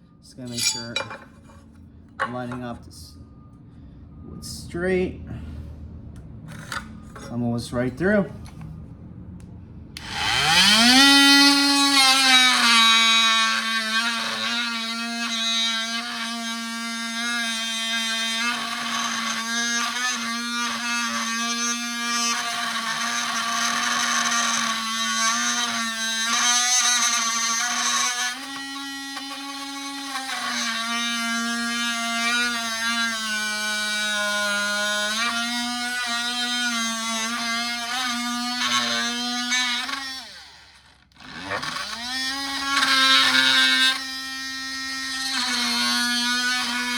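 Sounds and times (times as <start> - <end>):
oscillating multitool cutting wood: 10.0 - 46.9.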